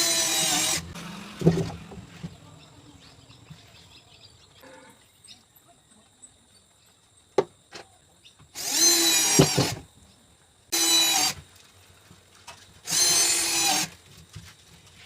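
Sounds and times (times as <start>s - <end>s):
electric drill whining: 0.0s - 1.5s, 8.6s - 9.8s, 10.7s - 11.4s, 12.8s - 14.0s.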